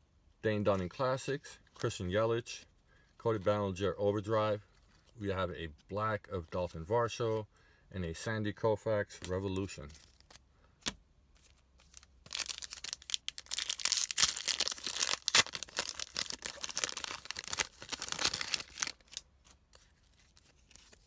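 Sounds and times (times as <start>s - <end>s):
wrapper being torn and crinkled: 11.8s - 19.2s, 20.0s - 21.0s.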